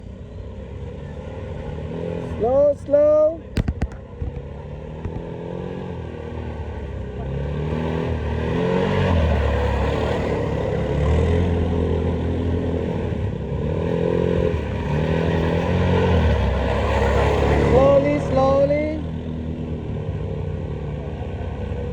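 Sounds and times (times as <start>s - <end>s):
quad bike engine revving: 0.0s - 21.9s
rattling noise: 3.6s - 5.6s.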